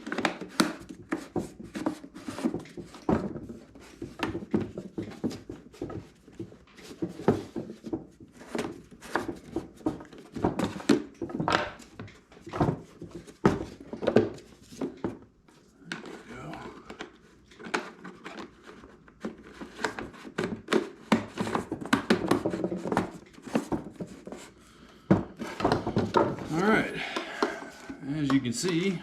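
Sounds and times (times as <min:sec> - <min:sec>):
tools and small parts clattering: 0:25.1 - 0:29.0.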